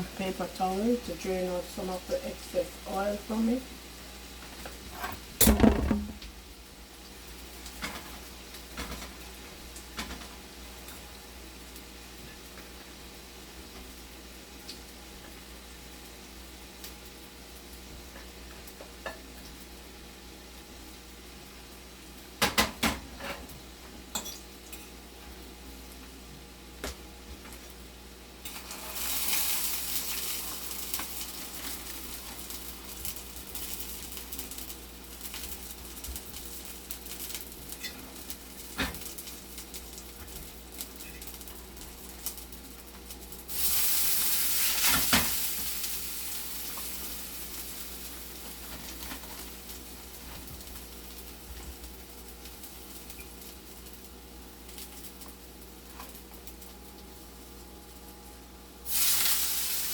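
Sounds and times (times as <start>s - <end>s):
oil sizzling in a frying pan: 0.0s - 59.9s
utensil knocking on a pan: 5.4s - 6.3s.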